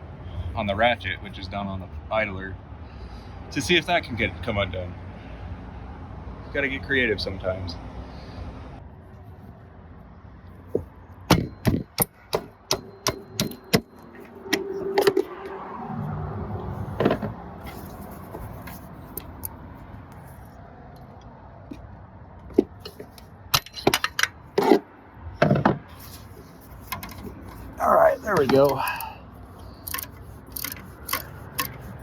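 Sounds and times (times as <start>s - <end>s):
hammer knocking on metal ratchet: 11.3s - 13.9s.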